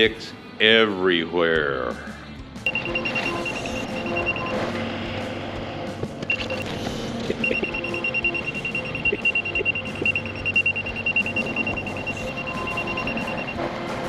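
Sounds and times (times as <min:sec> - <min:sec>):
rapid warning alarm beeps: 0:02.7 - 0:04.9, 0:06.2 - 0:14.0
loader engine running: 0:02.7 - 0:14.0.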